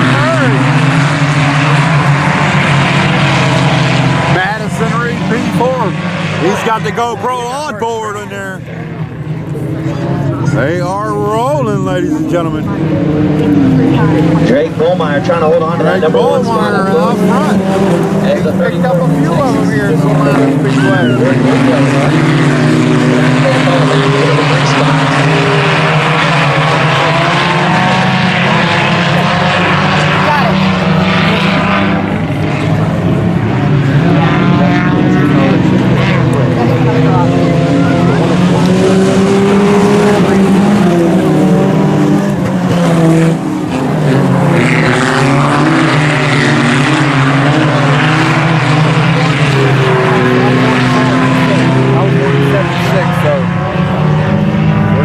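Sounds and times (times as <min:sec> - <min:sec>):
race car engines at speed: 0:00.0 - 0:55.0.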